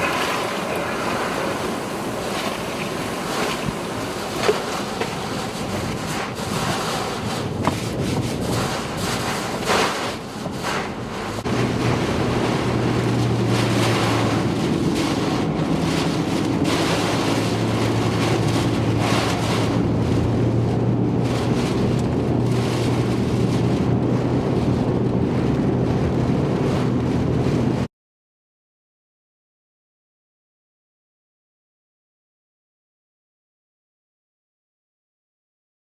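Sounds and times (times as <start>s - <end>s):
strong wind buffeting microphone: 0.0s - 27.9s.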